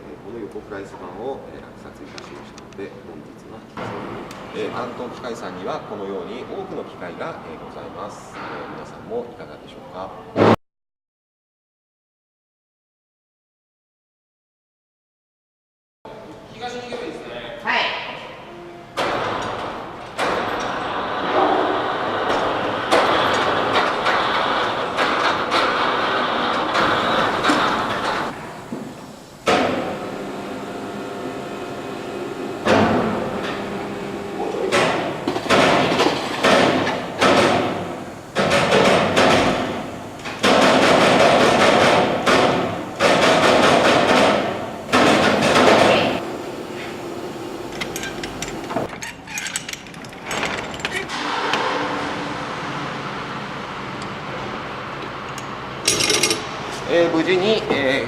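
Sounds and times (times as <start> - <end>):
machinery noise: 20.8 - 49.0.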